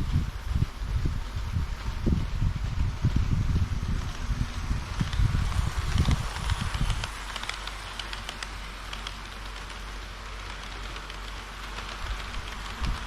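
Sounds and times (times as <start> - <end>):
model train rolling hiss: 0.0 - 13.0
small irregular clicks: 3.9 - 13.0.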